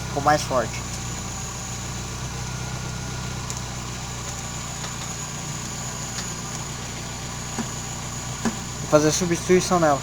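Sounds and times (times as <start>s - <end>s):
car engine idling: 0.0s - 10.0s.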